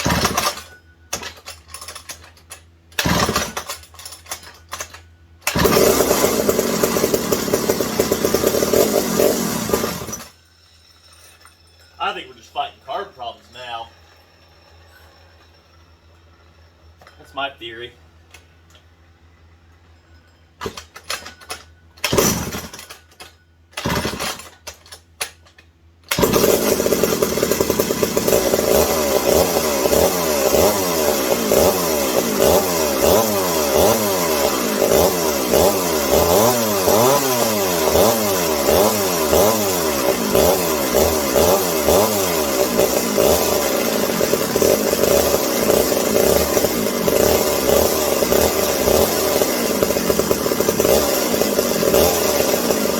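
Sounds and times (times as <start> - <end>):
chainsaw engine revving: 0.0 - 10.4, 20.6 - 23.0, 23.8 - 25.4, 26.1 - 52.9.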